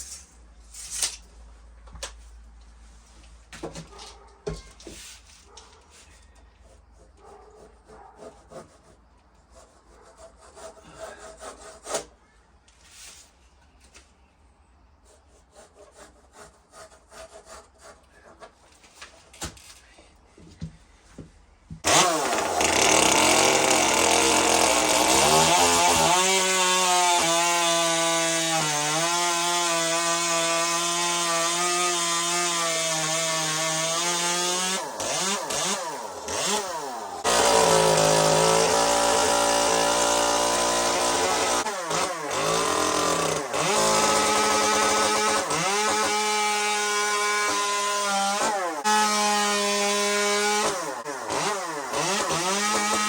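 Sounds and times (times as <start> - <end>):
chainsaw cutting wood: 21.8 - 53.0.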